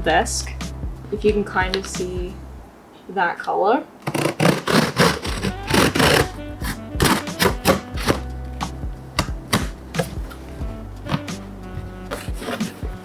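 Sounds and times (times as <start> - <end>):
background music with bass: 0.0 - 2.7, 5.2 - 13.0
sharp clicks and taps: 7.0 - 10.2.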